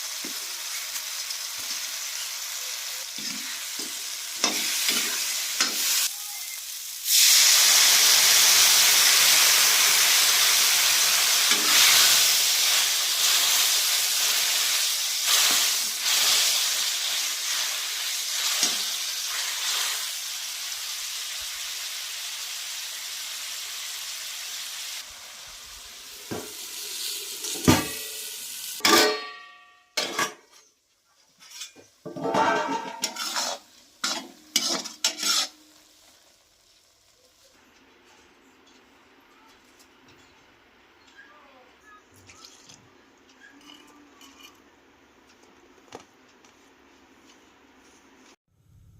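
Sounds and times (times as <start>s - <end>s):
food sizzling in hot oil: 0.0s - 28.9s, 31.4s - 37.6s
utensil knocking and scraping pan: 31.4s - 35.6s.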